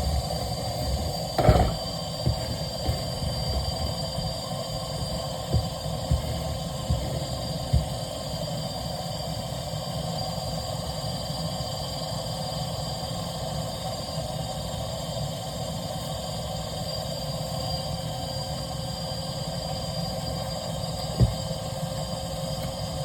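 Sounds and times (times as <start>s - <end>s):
vacuum cleaner running: 0.0s - 9.7s, 19.8s - 23.0s
knock: 0.8s - 4.2s, 5.5s - 8.0s, 21.2s - 21.5s.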